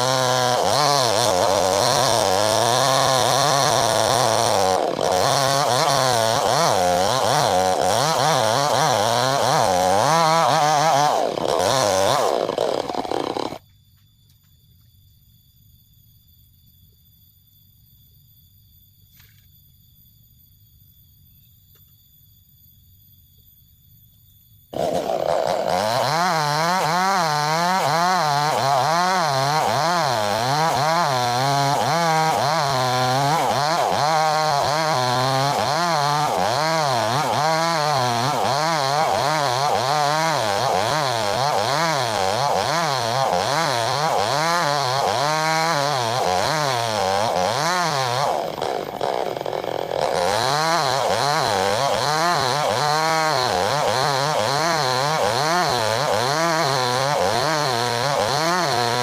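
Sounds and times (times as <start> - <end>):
chainsaw cutting log: 0.0 - 13.6, 24.7 - 59.0.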